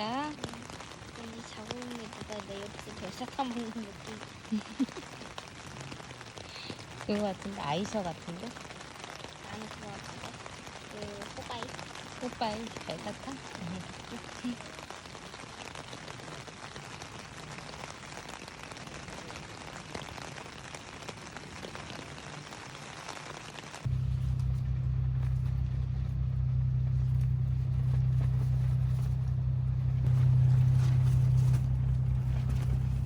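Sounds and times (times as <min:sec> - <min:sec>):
steady rain falling: 0:00.0 - 0:33.0
loud low hum and rumble: 0:23.9 - 0:33.0.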